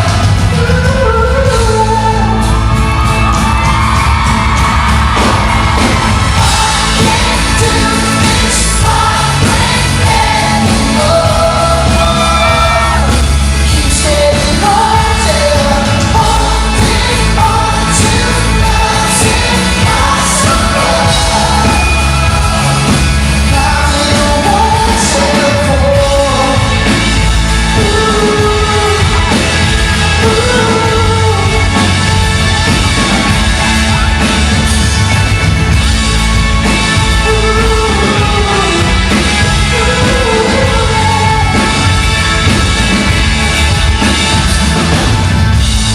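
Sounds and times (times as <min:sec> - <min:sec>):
person singing: 0:00.0 - 0:03.2, 0:05.2 - 0:34.0, 0:37.0 - 0:42.9
pop-rock band playing live: 0:00.0 - 0:45.9
crowd shouting: 0:02.2 - 0:25.6.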